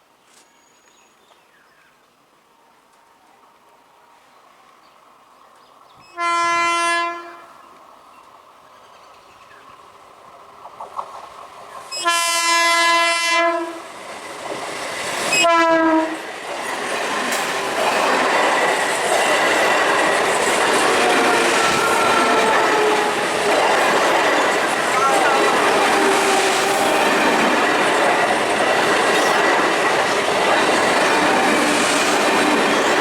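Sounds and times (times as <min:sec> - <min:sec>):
train horn blasts: 0:06.0 - 0:07.8, 0:11.9 - 0:13.8, 0:15.3 - 0:16.2, 0:20.9 - 0:23.5, 0:24.8 - 0:27.3.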